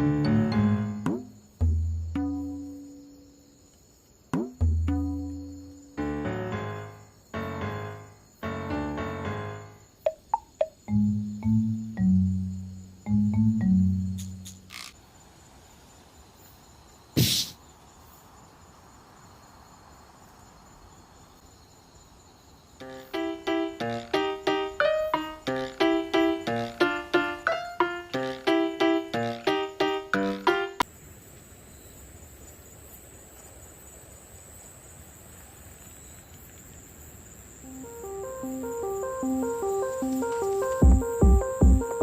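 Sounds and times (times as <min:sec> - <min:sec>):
plucked music notes: 0:00.0 - 0:02.9, 0:04.4 - 0:06.8, 0:10.9 - 0:14.6, 0:37.7 - 0:42.0
insects trilling: 0:00.0 - 0:42.0.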